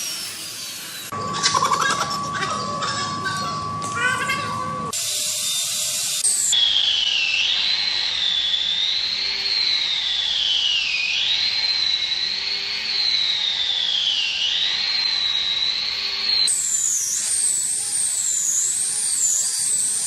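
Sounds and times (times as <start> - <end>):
power tool motor whining: 0.0 - 20.0.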